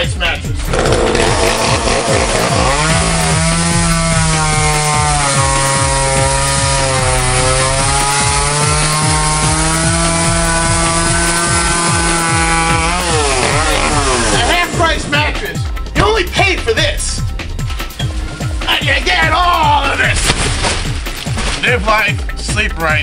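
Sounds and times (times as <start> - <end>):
chainsaw cutting mattress: 0.6 - 14.9.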